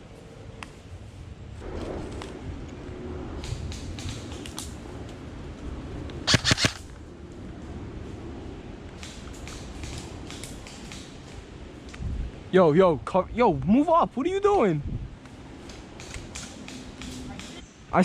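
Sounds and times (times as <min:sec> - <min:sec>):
airsoft gun shots: 0:06.3 - 0:06.8.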